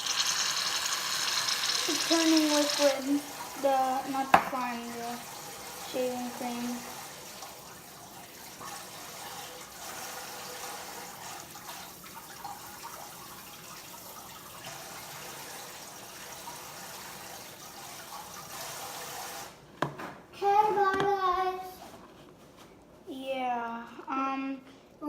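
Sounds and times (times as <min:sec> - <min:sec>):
water running from a tap: 0:00.0 - 0:19.6.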